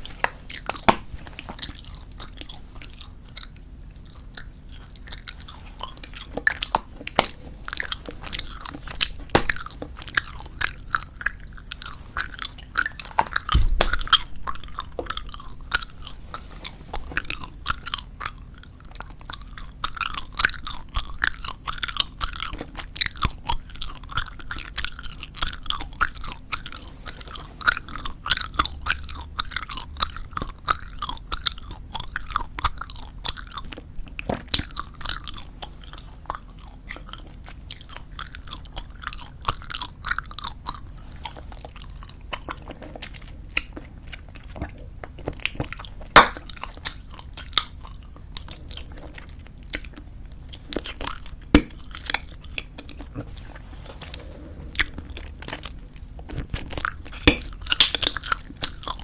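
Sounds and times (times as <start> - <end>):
wet chewing of bubblegum: 0.0 - 59.0
low thump: 13.5 - 14.2.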